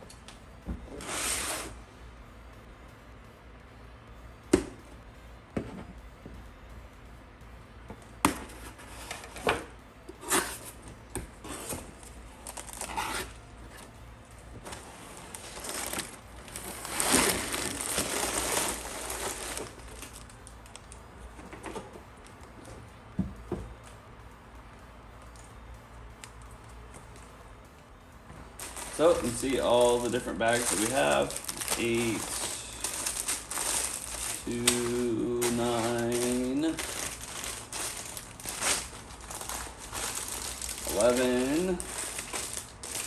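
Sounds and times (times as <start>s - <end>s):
plastic bags crinkling: 11.8s - 13.4s, 14.6s - 21.0s, 28.5s - 43.0s
cardboard tearing: 15.1s - 20.2s, 28.6s - 43.0s.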